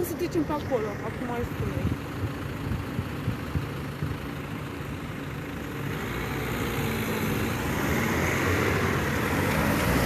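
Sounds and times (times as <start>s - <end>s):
road traffic: 0.0s - 10.0s
vehicle approaching: 0.0s - 10.0s.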